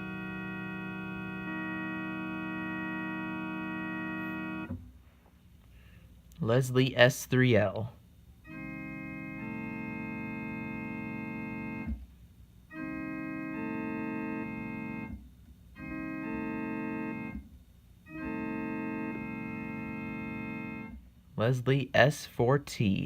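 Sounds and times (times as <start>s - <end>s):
electronic keyboard organ chord: 0.0s - 4.8s, 8.4s - 21.1s.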